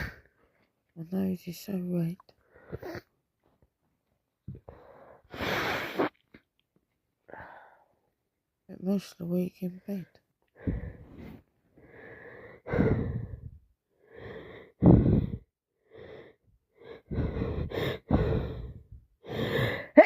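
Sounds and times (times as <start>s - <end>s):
person wheezing gasping breaths: 11.9s - 20.0s.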